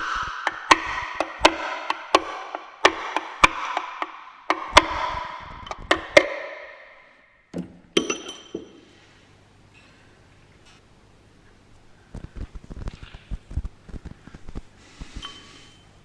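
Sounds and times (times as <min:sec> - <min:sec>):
hammer striking metal: 0:00.0 - 0:08.9.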